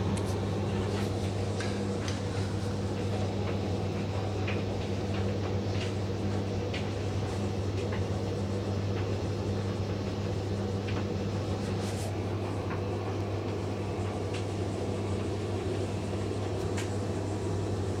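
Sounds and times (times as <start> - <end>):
tumble dryer humming: 0.0 - 18.0
light ticks inside drum: 2.9 - 9.2.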